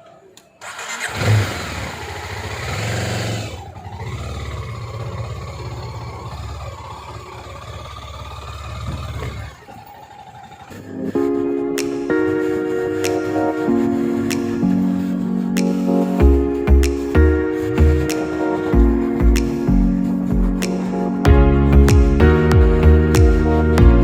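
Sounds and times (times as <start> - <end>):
motorcycle engine revving: 0.6 - 14.2.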